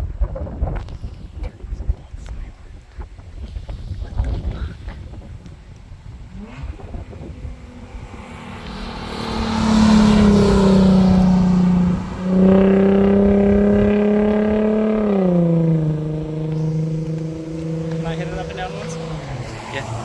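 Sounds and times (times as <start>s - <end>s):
car engine accelerating: 3.6s - 20.0s.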